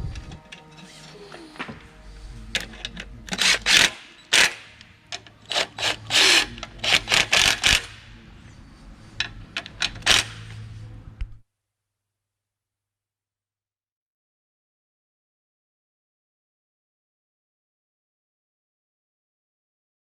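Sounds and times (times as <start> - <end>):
impact driver bursts: 3.3 - 4.8, 5.4 - 8.2, 9.9 - 10.6.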